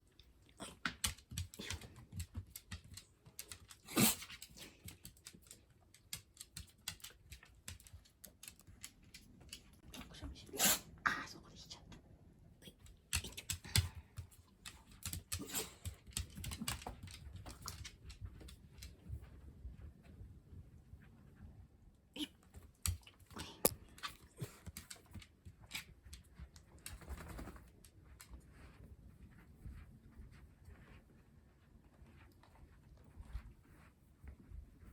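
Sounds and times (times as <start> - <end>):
pet claws clicking on wood floor: 0.8 - 9.8, 12.9 - 18.9
animal sneeze: 3.9 - 4.3, 10.4 - 11.0.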